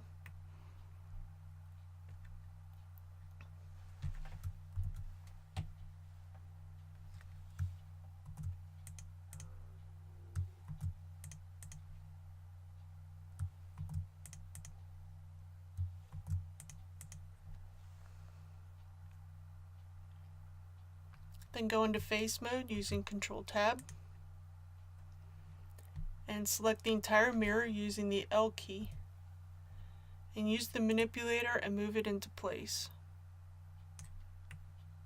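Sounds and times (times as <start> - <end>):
steady low hum: 0.0 - 35.0
keyboard keystrokes and clicks: 3.4 - 5.9, 7.1 - 9.5, 10.3 - 12.0, 13.4 - 14.8, 15.8 - 17.3, 33.9 - 34.9.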